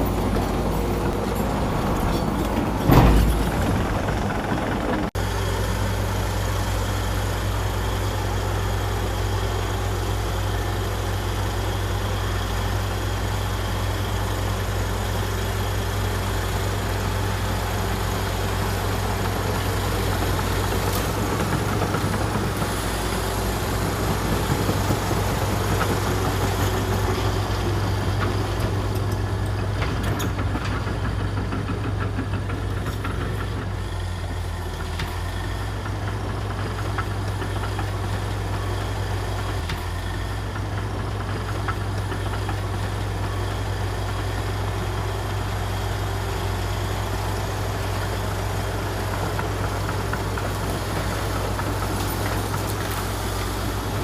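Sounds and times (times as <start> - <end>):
bulldozer diesel engine running: 0.0 - 54.0
loud metal clank: 1.2 - 4.6.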